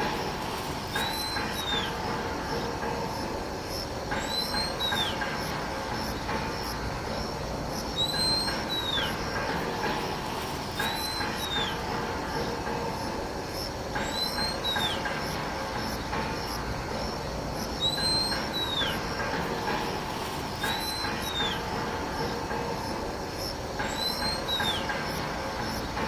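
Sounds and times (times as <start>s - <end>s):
bird whistling call: 8.0s - 9.2s, 10.9s - 11.8s, 14.0s - 15.0s, 17.8s - 19.0s, 20.8s - 21.6s, 23.9s - 24.9s.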